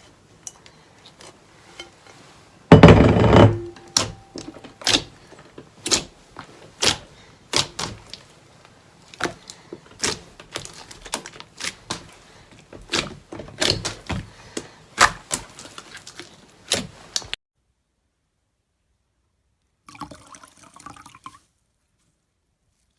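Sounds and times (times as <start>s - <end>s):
small crackles: 4.3s - 17.4s.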